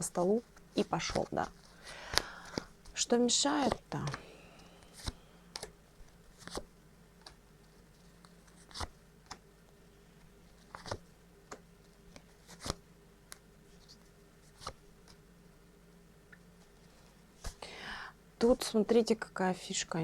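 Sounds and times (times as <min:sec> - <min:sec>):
faint room hum: 0:00.0 - 0:20.0
cards clicking and rustling: 0:00.6 - 0:09.4, 0:10.6 - 0:13.4.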